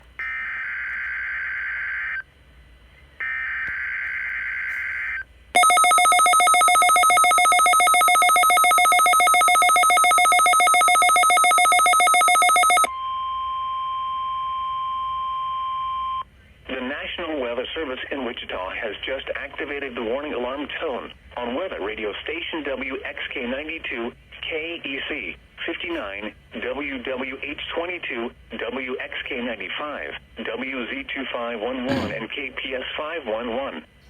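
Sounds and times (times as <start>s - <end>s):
rapidly pulsing electronic alarm: 0.2s - 2.3s, 3.2s - 12.9s
steady single-pitch alarm tone: 3.2s - 16.3s.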